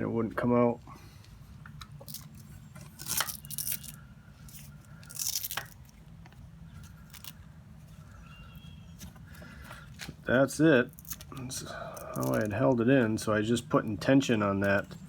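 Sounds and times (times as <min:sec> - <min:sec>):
tape and strap crinkling: 0:01.6 - 0:08.0, 0:08.9 - 0:12.8.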